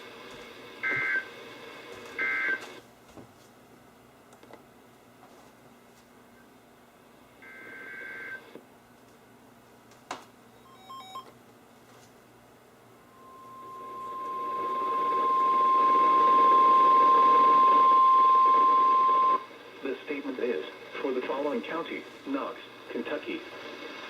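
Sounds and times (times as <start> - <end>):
static hiss: 0.0 - 2.8, 6.4 - 8.6, 12.9 - 24.0
steady alarm tone: 0.8 - 1.2, 13.1 - 19.4
warbling digital data tones: 13.1 - 19.3
faint beeps: 13.1 - 19.4.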